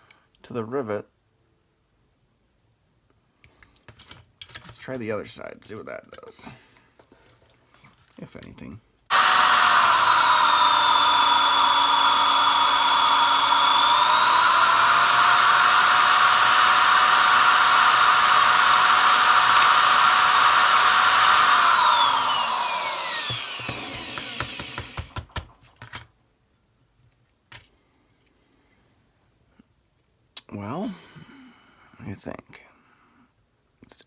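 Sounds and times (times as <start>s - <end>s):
electric drill whining: 9.1s - 25.4s.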